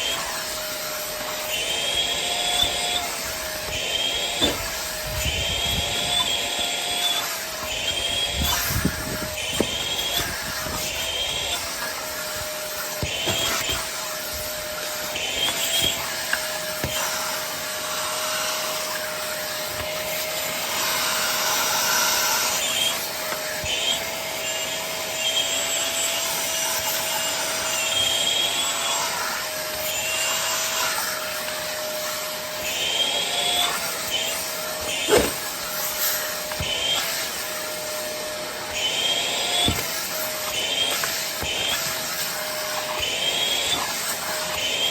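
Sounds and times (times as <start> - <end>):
vacuum cleaner running: 0.0 - 44.9.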